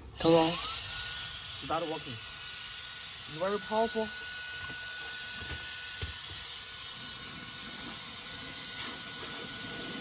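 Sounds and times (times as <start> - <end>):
hair dryer running: 3.4 - 9.8.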